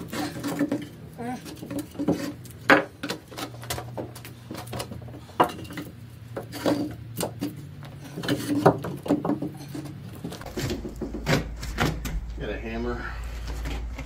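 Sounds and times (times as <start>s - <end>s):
tools and wood clattering: 0.0s - 12.4s, 13.3s - 14.0s
steady low hum: 9.5s - 14.0s.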